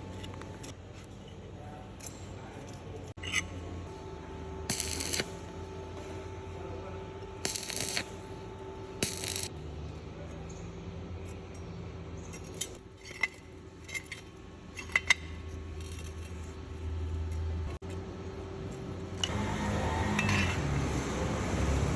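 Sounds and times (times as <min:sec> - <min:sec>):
metal parts clinking: 0:09.0 - 0:09.5, 0:11.2 - 0:16.5
sharp ringing clicks: 0:09.0 - 0:09.5.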